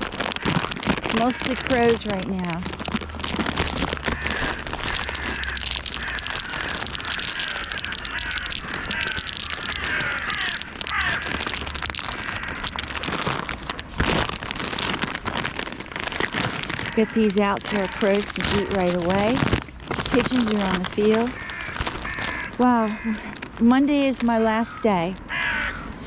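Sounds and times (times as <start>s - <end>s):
rustling handling noise: 0.0s - 26.0s
crows cawing: 0.2s - 2.2s, 3.3s - 13.5s, 16.6s - 19.3s, 20.2s - 23.6s, 24.4s - 26.0s.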